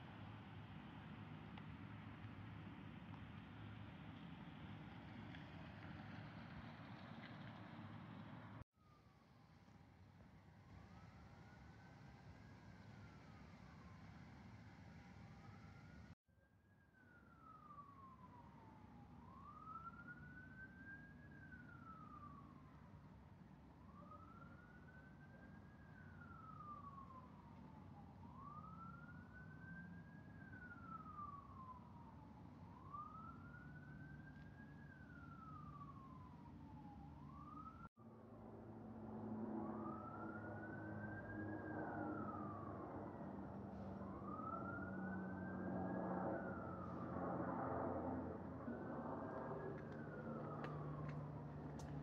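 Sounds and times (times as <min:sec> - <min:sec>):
low traffic rumble: 0:00.0 - 0:08.6, 0:23.3 - 0:52.0
faint siren wailing: 0:10.5 - 0:52.0.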